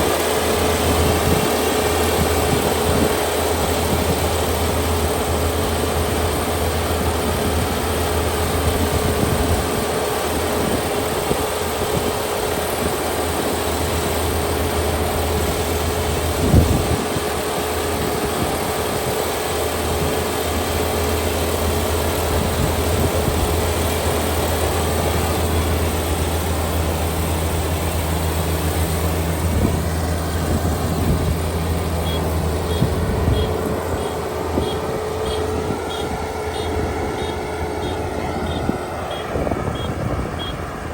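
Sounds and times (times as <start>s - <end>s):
combine harvester diesel drone: 0.0s - 40.9s
faint high beeps: 32.0s - 40.6s.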